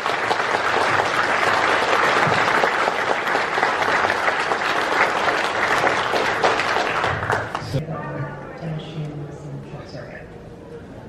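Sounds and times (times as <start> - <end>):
audience applauding: 0.0 - 7.8.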